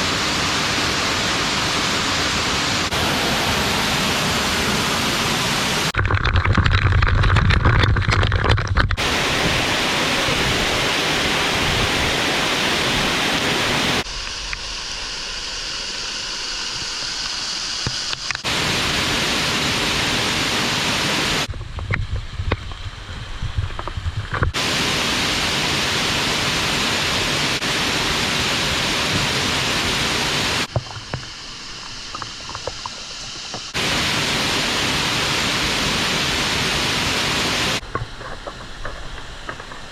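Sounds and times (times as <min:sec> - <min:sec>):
waterfall rushing: 0:00.0 - 0:06.0, 0:09.0 - 0:21.5, 0:24.6 - 0:37.9.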